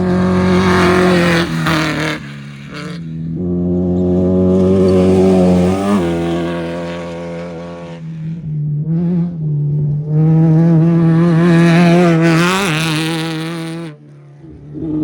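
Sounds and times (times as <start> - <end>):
off-road race engines passing: 0.0 - 15.0.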